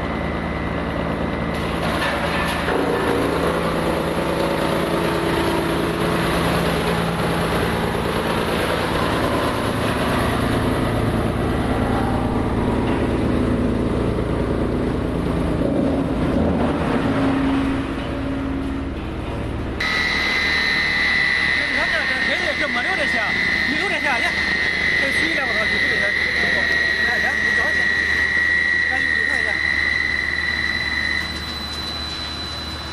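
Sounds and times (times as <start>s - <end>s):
wood chipper running: 0.0s - 32.9s
machine high tone: 2.7s - 15.4s, 19.8s - 32.9s.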